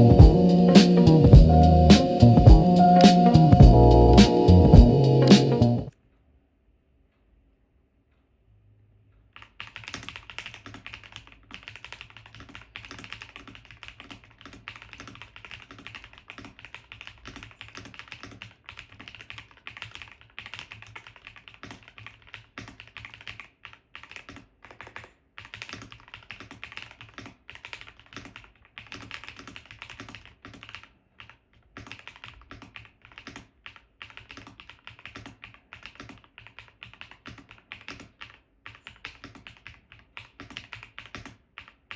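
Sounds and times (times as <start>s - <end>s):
mechanical keyboard typing: 9.4s - 41.9s.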